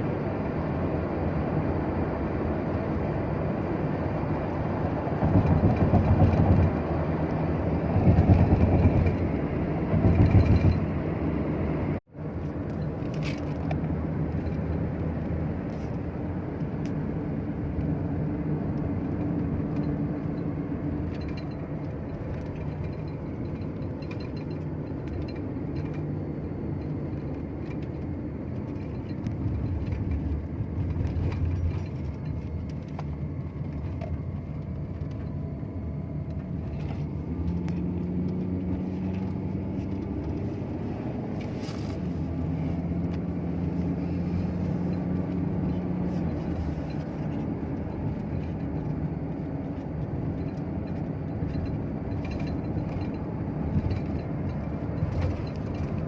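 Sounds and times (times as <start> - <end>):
vehicle running rumble: 0.0 - 56.0.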